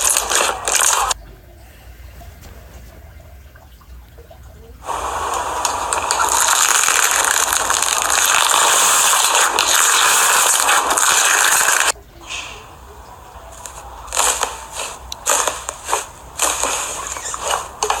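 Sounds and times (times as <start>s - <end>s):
loud rushing hiss: 4.8s - 18.0s.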